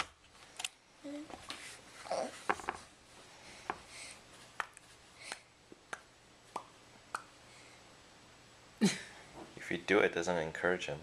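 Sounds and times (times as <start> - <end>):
baby mouth clicks and smacks: 4.6 - 7.3.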